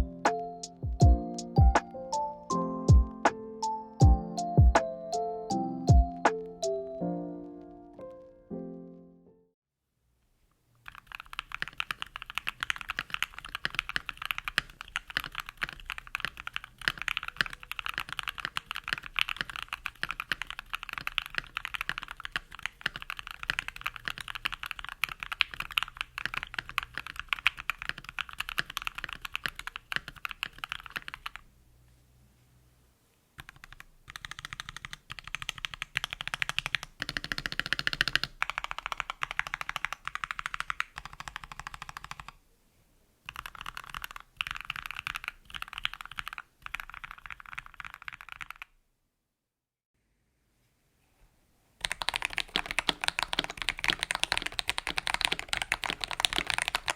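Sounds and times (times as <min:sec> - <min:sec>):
typing on mechanical keyboard: 0:10.8 - 0:31.4, 0:33.4 - 0:42.4, 0:43.3 - 0:48.7, 0:51.8 - 0:56.9.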